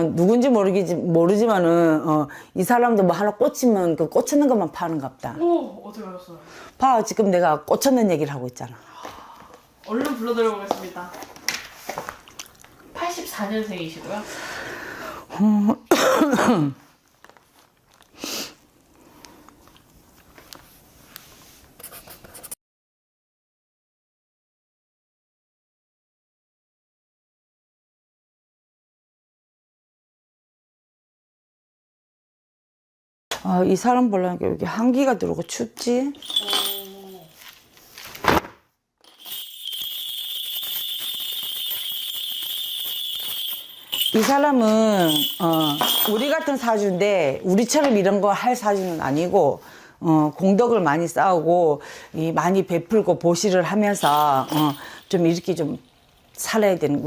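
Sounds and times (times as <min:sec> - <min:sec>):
person speaking: 0:36.1 - 0:37.4, 0:43.9 - 0:47.7, 0:53.1 - 0:57.0
bells jingling: 0:36.2 - 0:37.5, 0:39.1 - 0:47.0, 0:53.9 - 0:56.7.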